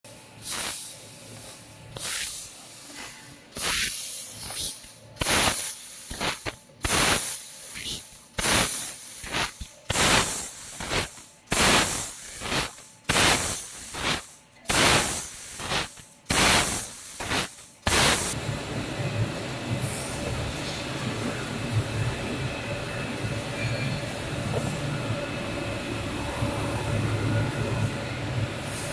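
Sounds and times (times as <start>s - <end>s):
bursts of hissing air: 0.3s - 18.5s
steady machine hum: 15.9s - 28.9s.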